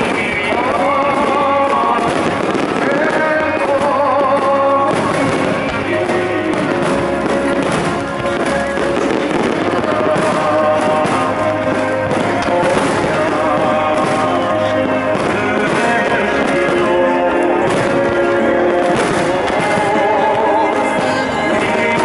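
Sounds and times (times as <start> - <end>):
firework shells banging and crackling: 0.0 - 22.0
loud music: 0.0 - 22.0.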